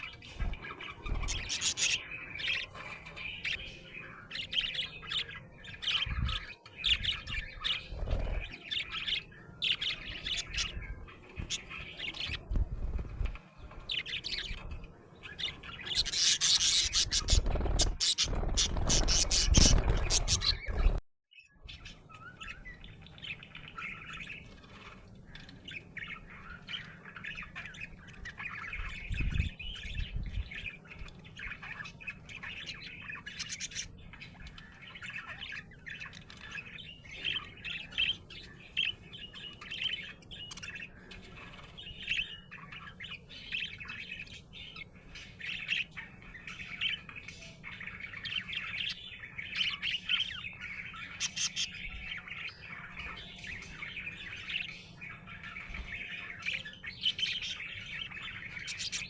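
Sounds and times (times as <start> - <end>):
budgerigar chirping: 15.4 - 20.9.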